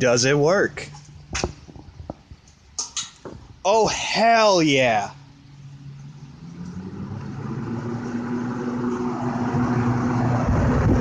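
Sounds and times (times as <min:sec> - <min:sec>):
fan motor hum: 0:00.0 - 0:11.0
rush of air from fan: 0:06.4 - 0:11.0
wind buffeting microphone: 0:06.9 - 0:11.0.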